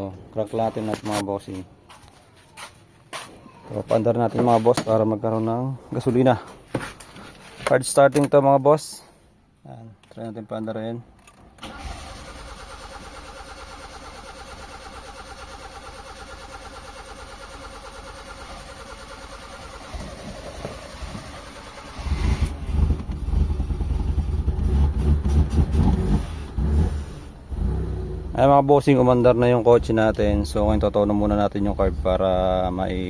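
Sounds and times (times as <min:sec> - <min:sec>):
car engine cranking and starting: 0:11.2 - 0:28.4.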